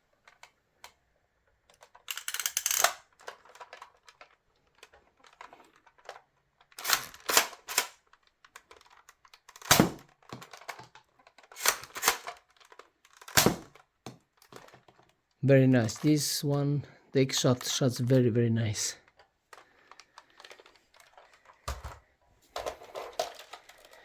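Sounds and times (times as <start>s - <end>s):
small clicky handling noises: 0.1s - 16.8s, 17.4s - 24.0s
toy blaster pumping and firing: 2.1s - 3.1s, 6.7s - 8.0s, 9.5s - 10.7s, 11.4s - 12.4s, 13.1s - 13.8s.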